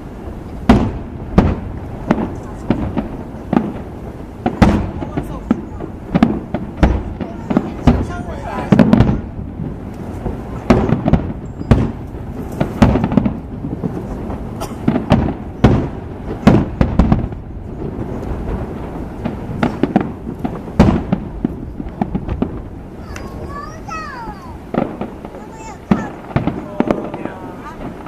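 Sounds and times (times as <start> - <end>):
firework shells booming: 0.0 - 28.0
fireworks crackling: 0.0 - 28.0.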